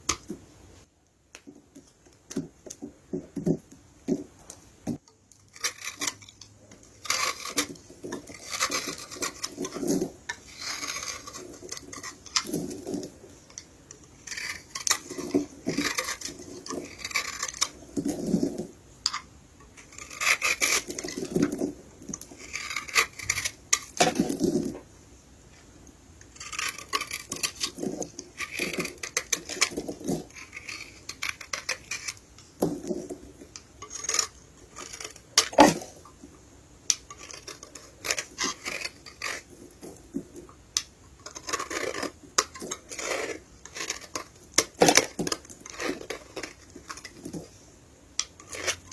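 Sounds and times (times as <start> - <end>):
soap being crushed and scraped: 5.4 - 24.8, 26.3 - 36.0, 36.9 - 47.6, 48.2 - 48.9.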